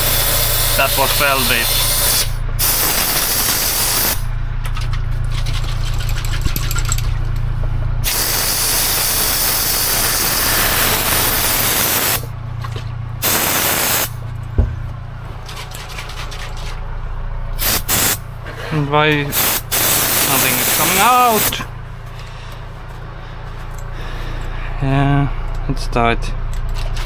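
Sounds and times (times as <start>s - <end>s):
spray hiss: 0.0s - 4.3s, 8.0s - 12.3s, 13.2s - 14.2s, 17.6s - 18.3s, 19.3s - 21.7s
steady low hum: 0.0s - 27.0s.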